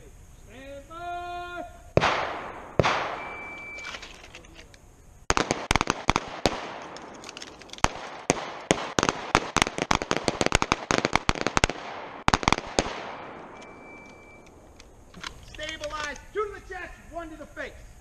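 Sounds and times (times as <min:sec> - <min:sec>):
pistols firing: 0:02.0 - 0:03.8, 0:05.3 - 0:14.7.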